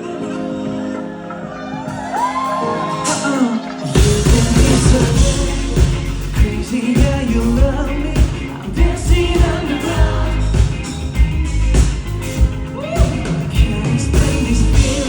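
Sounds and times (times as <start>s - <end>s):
upbeat backing track: 0.0s - 15.0s
man singing: 3.0s - 11.0s, 12.8s - 15.0s.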